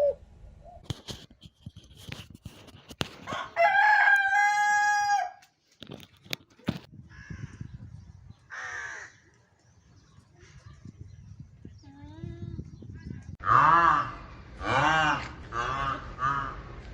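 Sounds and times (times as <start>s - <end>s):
rooster crowing: 3.3s - 5.4s.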